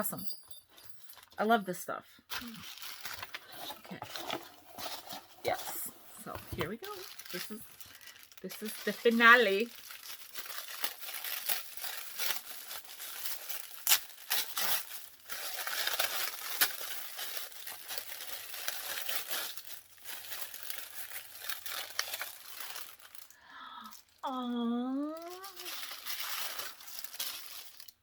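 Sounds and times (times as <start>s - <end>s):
wrapping crinkling and tearing: 2.3s - 28.0s.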